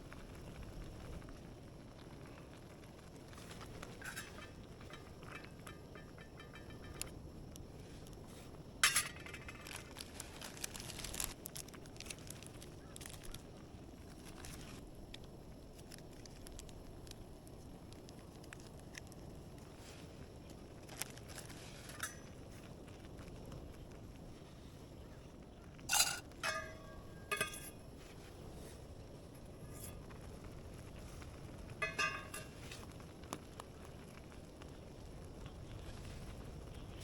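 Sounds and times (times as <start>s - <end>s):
cooking gear clinks and taps: 3.6s - 7.2s, 25.9s - 27.8s, 31.8s - 32.9s.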